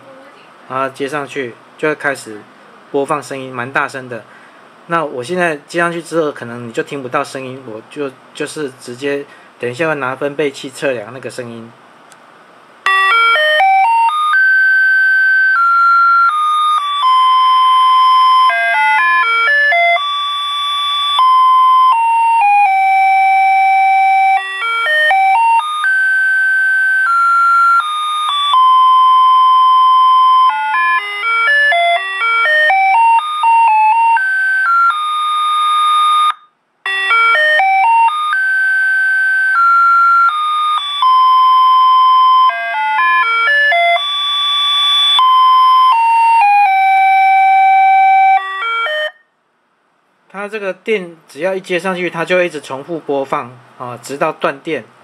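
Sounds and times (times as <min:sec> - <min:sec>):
electronic horn beeping melody: 0:12.9 - 0:49.2.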